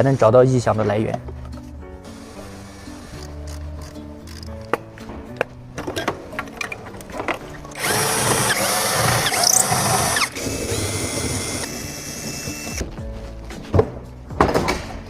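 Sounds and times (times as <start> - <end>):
handheld power tool running: 7.8 - 12.8.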